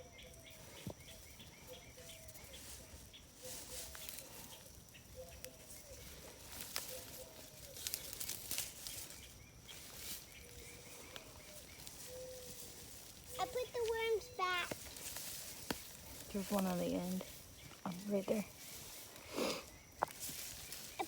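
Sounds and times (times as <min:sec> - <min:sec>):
rustling and crunching soil: 0:00.0 - 0:21.0
bird call: 0:08.8 - 0:14.8.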